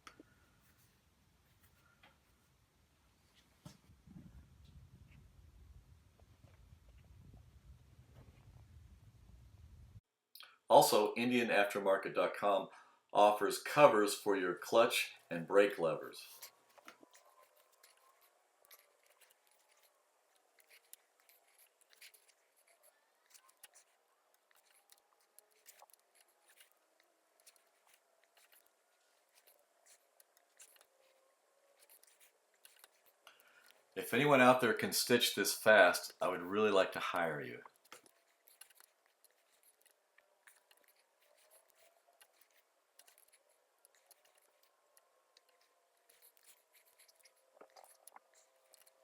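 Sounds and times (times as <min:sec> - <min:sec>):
faint scratching on leather: 0:15.6 - 0:49.0.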